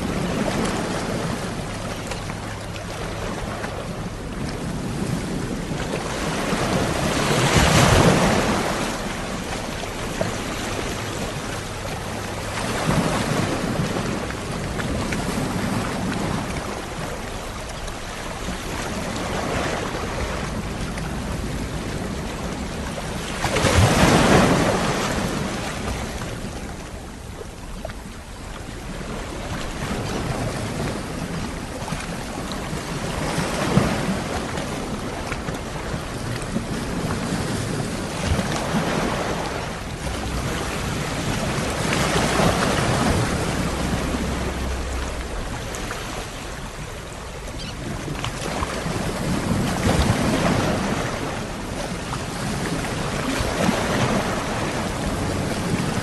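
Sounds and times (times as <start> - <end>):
big waves breaking: 0.0 - 56.0
sea waves washing onto shore: 0.0 - 56.0.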